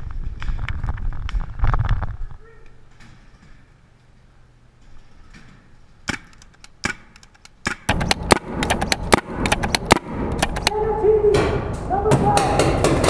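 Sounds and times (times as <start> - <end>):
paintball markers popping: 6.1 - 10.8.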